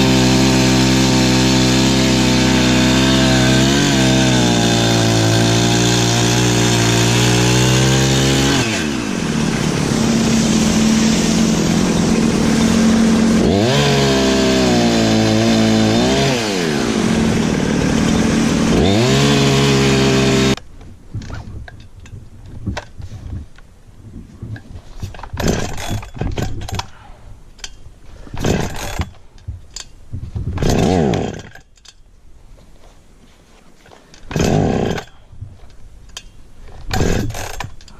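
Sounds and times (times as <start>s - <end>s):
chainsaw cutting wood: 0.0s - 20.6s, 25.1s - 26.9s, 28.2s - 29.2s, 30.5s - 31.8s, 34.2s - 35.2s, 36.8s - 37.9s.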